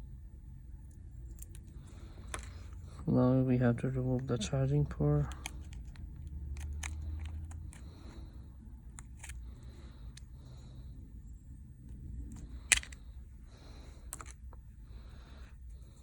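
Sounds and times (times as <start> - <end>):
small tool clicks and scraping: 5.3 - 8.2, 8.9 - 10.3.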